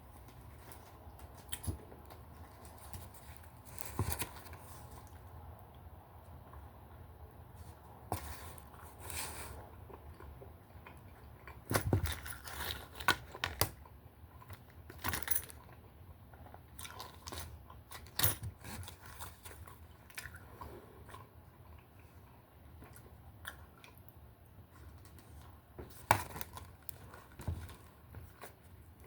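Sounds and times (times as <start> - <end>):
person chewing food: 15.6 - 17.9, 18.8 - 25.4.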